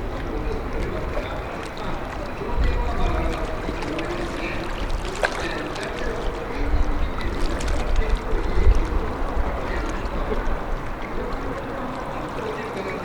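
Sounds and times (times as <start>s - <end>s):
distant boat engines droning: 0.0s - 13.0s
wind buffeting microphone: 0.0s - 13.0s.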